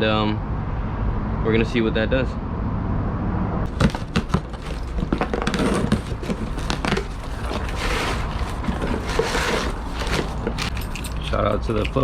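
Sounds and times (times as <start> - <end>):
crinkling crackles: 3.7 - 12.0.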